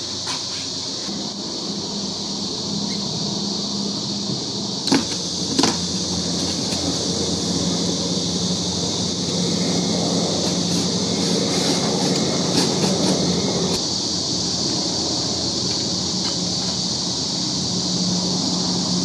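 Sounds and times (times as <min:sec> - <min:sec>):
electric core drill running: 0:02.8 - 0:13.8.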